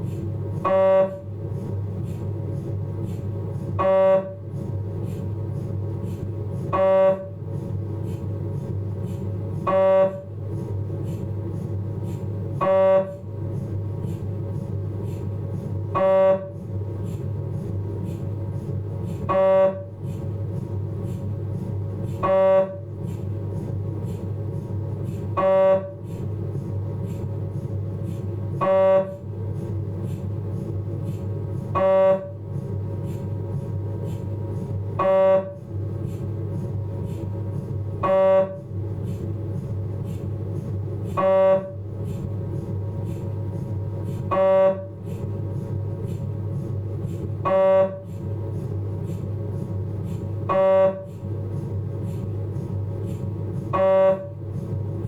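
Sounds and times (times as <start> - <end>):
steady low hum: 0.0 - 55.0
loud buzzing scanner tone: 0.6 - 1.4, 3.7 - 4.5, 6.7 - 7.5, 9.6 - 10.4, 12.6 - 13.3, 15.9 - 16.7, 19.2 - 20.0, 22.2 - 22.9, 25.3 - 26.0, 28.6 - 29.3, 31.7 - 32.4, 34.9 - 35.7, 38.0 - 38.7, 41.1 - 41.9, 44.2 - 45.0, 47.4 - 48.2, 50.4 - 51.2, 53.6 - 54.4.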